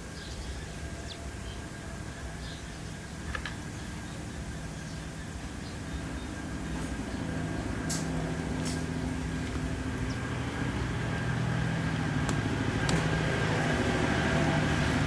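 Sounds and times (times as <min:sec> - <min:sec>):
motor engine humming: 0:07.0 - 0:15.0.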